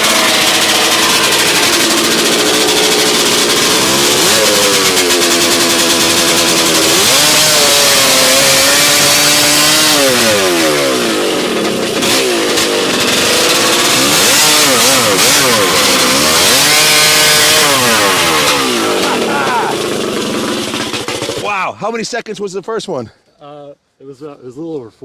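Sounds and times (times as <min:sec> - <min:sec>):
chainsaw cutting wood: 0:00.0 - 0:21.5.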